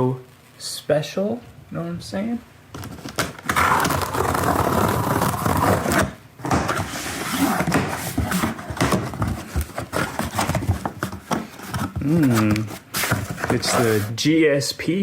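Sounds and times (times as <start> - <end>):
packaging rustling: 2.7 - 14.2.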